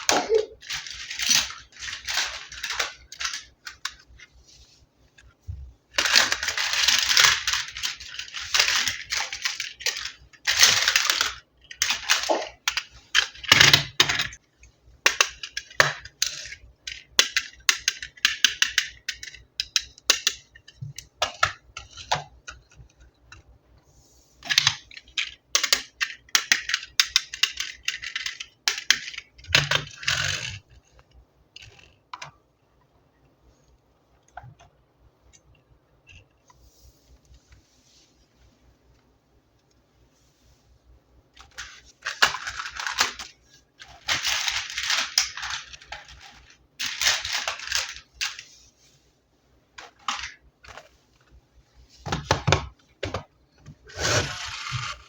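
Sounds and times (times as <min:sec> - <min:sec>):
plastic toy parts clicking: 0:00.0 - 0:04.3, 0:06.0 - 0:23.5, 0:24.4 - 0:32.4, 0:41.4 - 0:48.5
toy packaging rustling: 0:00.0 - 0:14.4, 0:41.4 - 0:48.7, 0:49.8 - 0:52.7, 0:53.8 - 0:55.0.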